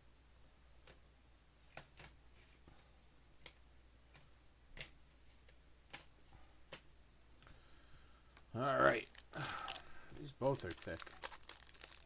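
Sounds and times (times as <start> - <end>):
low steady hum: 0.0 - 12.0
trading cards clicking: 3.4 - 6.1.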